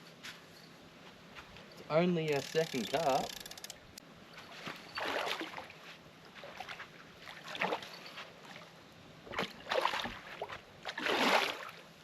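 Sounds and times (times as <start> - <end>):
fish splashing in water: 5.0 - 5.7, 6.4 - 7.9, 9.3 - 11.8.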